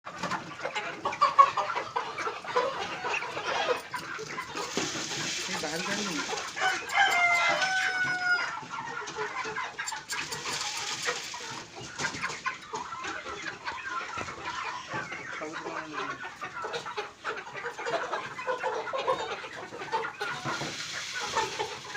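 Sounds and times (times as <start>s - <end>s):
chickens clucking: 0.0s - 21.9s
rooster crowing: 6.5s - 8.6s.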